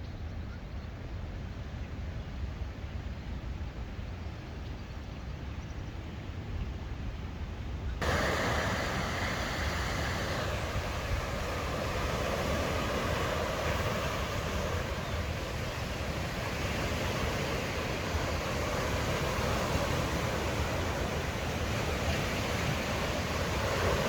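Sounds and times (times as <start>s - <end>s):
low wind rumble on microphone: 0.0s - 24.0s
waves washing on shore: 8.0s - 24.0s.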